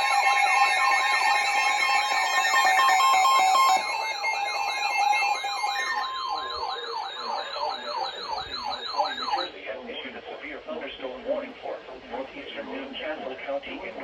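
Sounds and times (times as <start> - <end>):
electronic siren sweeping: 0.0 - 9.5
steady and beeping tones: 0.0 - 9.5.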